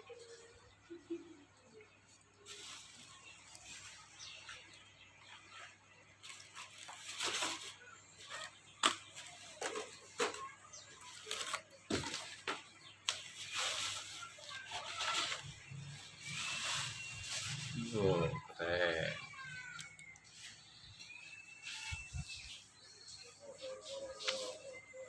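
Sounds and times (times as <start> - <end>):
plastic packaging rustling: 2.4 - 4.4, 5.5 - 17.9.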